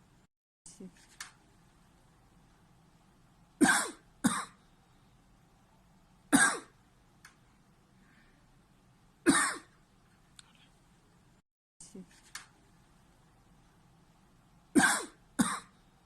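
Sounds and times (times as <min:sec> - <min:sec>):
man coughing: 0:14.8 - 0:15.7.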